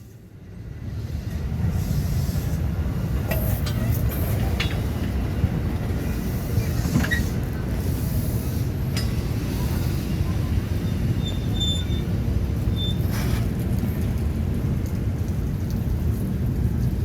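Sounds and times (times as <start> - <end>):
train rumbling past: 0.0 - 17.0
wheel squeaks and clicks: 6.7 - 7.4, 10.9 - 13.5.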